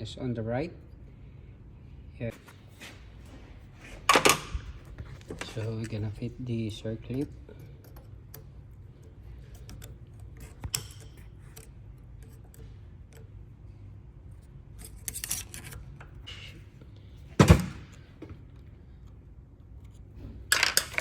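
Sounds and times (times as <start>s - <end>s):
small metal clicks and scrapes: 4.9s - 17.1s.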